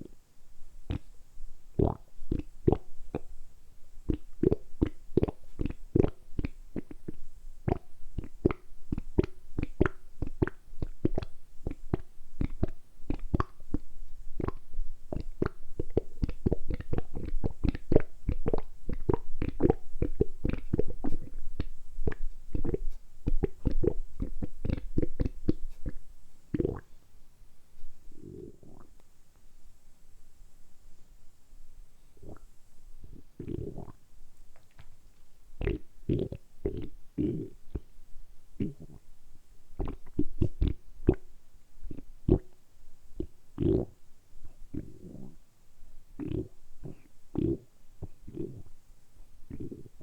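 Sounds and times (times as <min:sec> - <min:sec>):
stomach gurgling: 0:00.9 - 0:01.1, 0:01.8 - 0:03.3, 0:04.1 - 0:26.9, 0:28.2 - 0:29.0, 0:32.2 - 0:32.5, 0:33.1 - 0:34.0, 0:35.6 - 0:37.9, 0:39.8 - 0:41.3, 0:46.2 - 0:48.7, 0:49.5 - 0:50.0.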